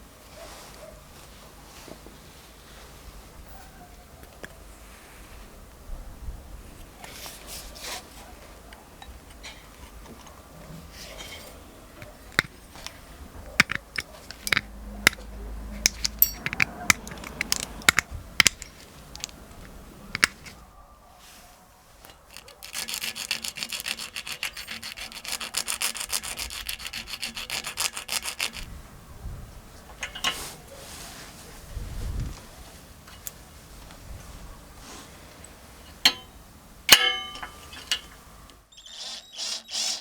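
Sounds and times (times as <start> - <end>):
hand tool rasping metal: 15.8 - 18.7, 22.1 - 28.7, 36.9 - 38.1.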